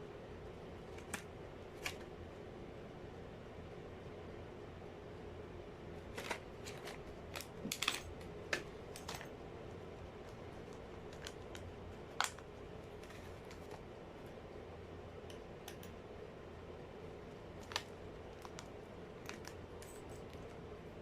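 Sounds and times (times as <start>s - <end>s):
small parts clicking and tapping: 6.1s - 9.4s, 10.2s - 13.8s, 15.2s - 16.0s, 17.6s - 20.6s.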